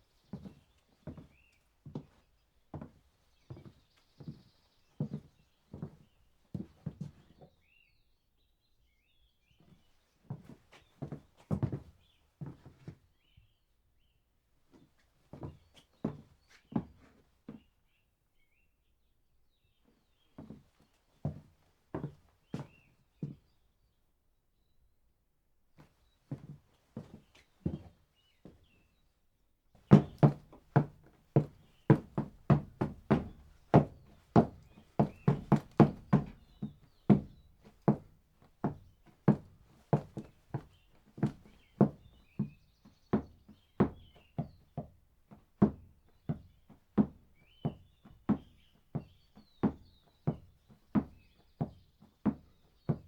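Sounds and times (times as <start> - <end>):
birds chirping faintly: 0.0 - 25.0, 25.8 - 53.0
light walking footsteps: 29.8 - 44.6
heavy marching footsteps: 29.9 - 38.0
footsteps walking: 34.5 - 36.4.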